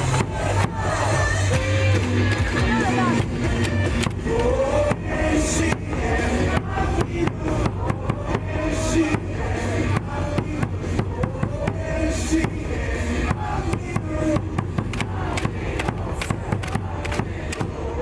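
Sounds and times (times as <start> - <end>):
crowd clapping along: 0.0 - 4.6, 14.8 - 17.8
stadium loudspeaker music: 0.0 - 18.0.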